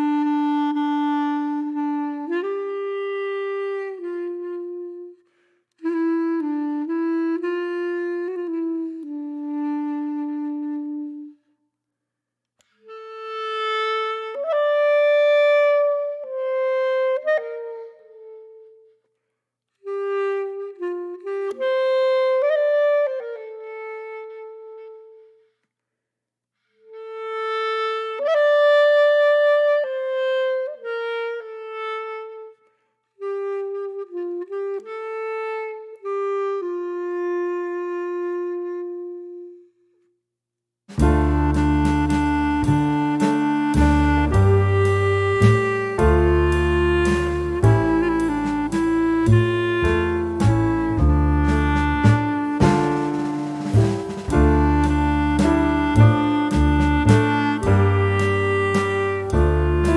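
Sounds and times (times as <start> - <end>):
solo woodwind melody: 0.0 - 11.6, 12.7 - 19.0, 19.8 - 25.5, 26.8 - 39.9, 40.9 - 59.9.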